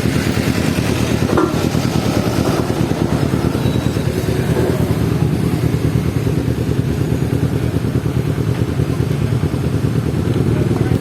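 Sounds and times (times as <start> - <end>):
motorcycle engine running: 0.0 - 11.0
road traffic noise: 0.0 - 11.0.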